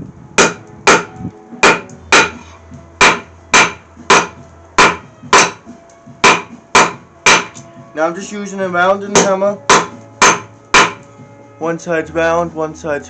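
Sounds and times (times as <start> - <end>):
hammer clanging on anvil: 6.3 - 7.6, 9.1 - 11.0.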